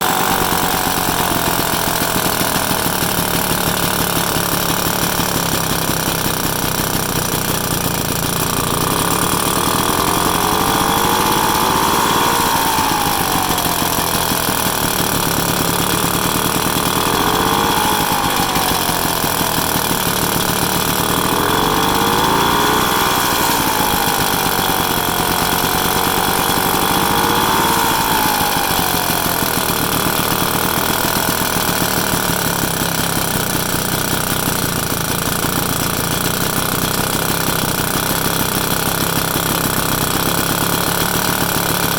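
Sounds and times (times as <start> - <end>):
two-stroke scooter engine revving: 0.0 - 41.9.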